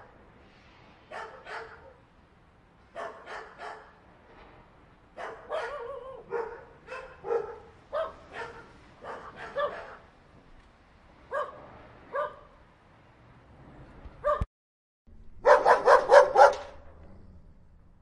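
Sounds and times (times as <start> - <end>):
dogs barking: 1.1 - 2.0, 2.9 - 4.0, 5.2 - 10.1, 11.3 - 12.6, 14.2 - 14.5, 15.4 - 16.9.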